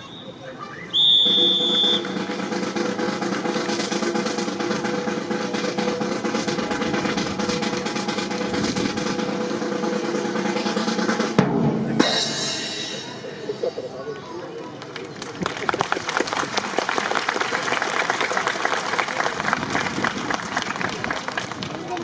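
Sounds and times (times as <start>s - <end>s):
snare drum roll: 1.3s - 13.3s.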